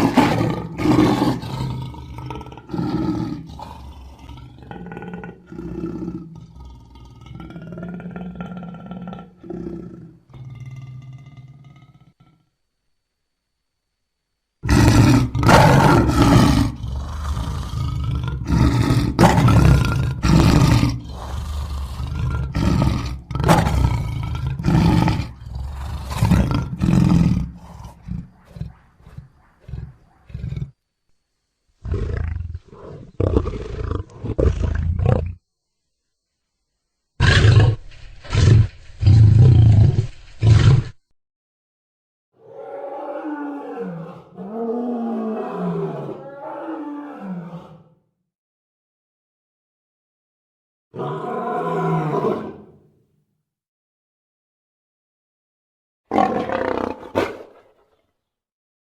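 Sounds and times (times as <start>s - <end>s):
lion grunts: 0.0s - 12.4s, 14.6s - 30.8s, 31.8s - 35.4s
lion roaring: 0.0s - 12.4s, 14.6s - 30.8s, 31.8s - 35.4s, 37.2s - 41.0s, 42.4s - 48.0s, 51.0s - 53.0s, 56.1s - 58.0s.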